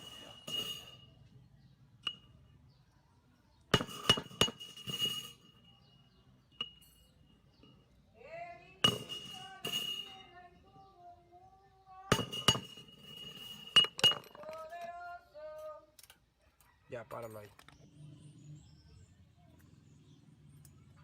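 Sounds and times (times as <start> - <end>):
sheet metal clinking: 0.0 - 1.4, 3.7 - 8.0, 8.7 - 10.9, 12.0 - 15.8.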